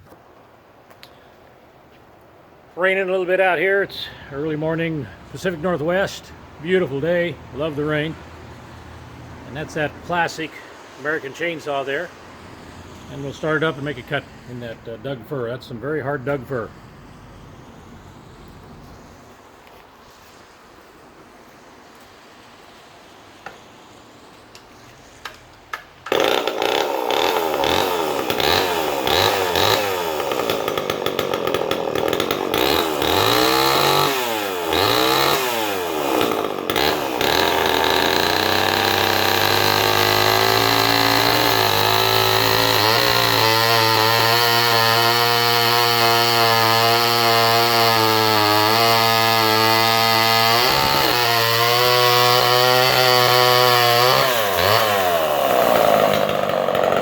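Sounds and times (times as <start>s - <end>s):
chainsaw engine revving: 3.8s - 19.1s, 26.1s - 57.0s
chainsaw cutting wood: 4.0s - 15.2s, 21.6s - 57.0s.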